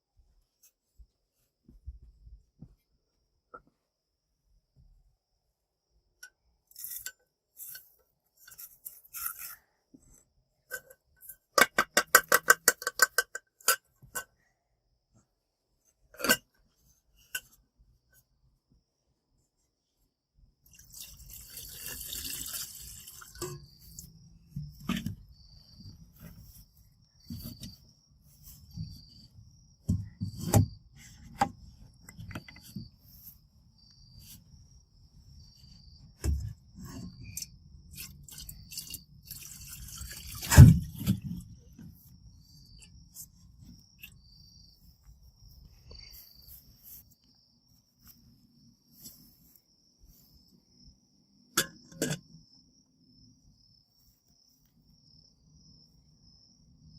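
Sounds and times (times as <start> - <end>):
cricket chirping: 2.3 - 56.9.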